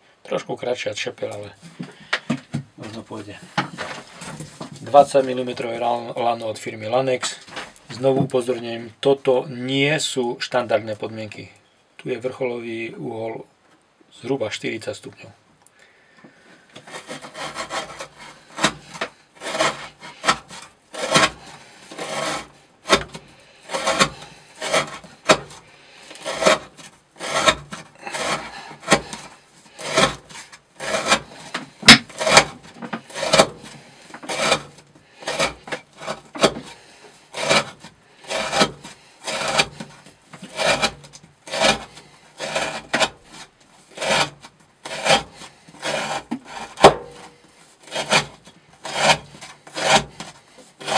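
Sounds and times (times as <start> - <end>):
knife cutting rope: 16.8 - 50.9.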